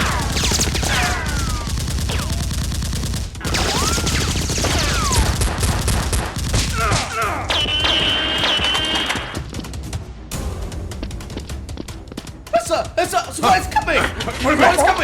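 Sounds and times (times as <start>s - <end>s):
automatic gunfire: 0.0s - 9.4s.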